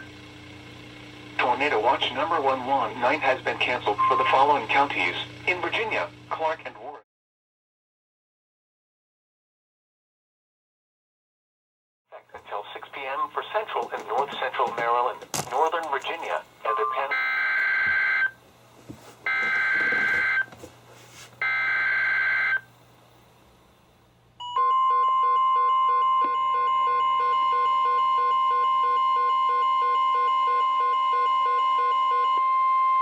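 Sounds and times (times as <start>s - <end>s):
steady warning alarm tone: 1.4s - 5.6s, 16.6s - 18.4s, 19.3s - 20.5s, 21.4s - 22.7s, 24.4s - 33.0s.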